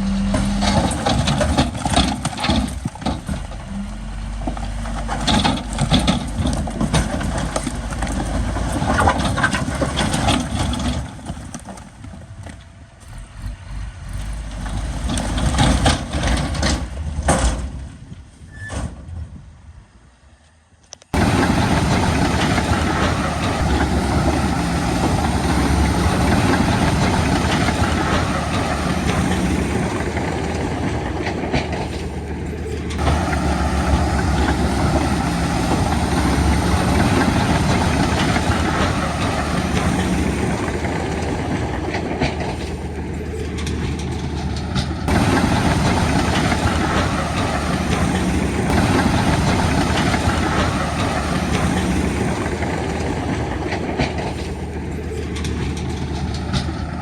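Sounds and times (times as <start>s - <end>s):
bulldozer tracks clanking: 0.0s - 19.4s, 21.0s - 57.0s
bulldozer diesel engine: 0.0s - 20.2s, 20.9s - 57.0s.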